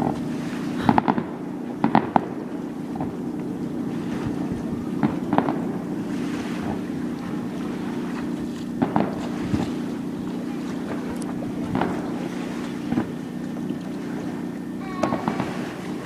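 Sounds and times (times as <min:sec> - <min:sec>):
boat engine idling: 0:00.0 - 0:16.0
firework bangs: 0:00.8 - 0:03.2, 0:04.9 - 0:06.9, 0:08.8 - 0:09.6, 0:11.7 - 0:12.3, 0:14.8 - 0:16.0.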